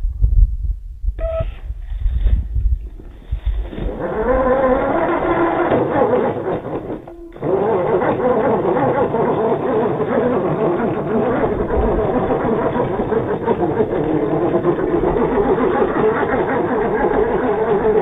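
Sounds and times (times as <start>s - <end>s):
electric motor buzzing whine: 2.9s - 18.0s.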